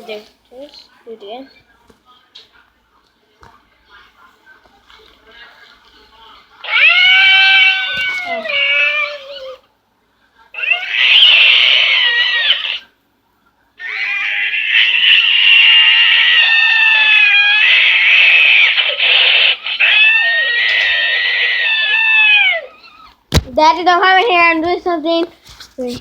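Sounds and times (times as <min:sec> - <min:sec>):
toy cat screeching: 0:06.6 - 0:09.6, 0:10.6 - 0:12.9, 0:13.8 - 0:23.1.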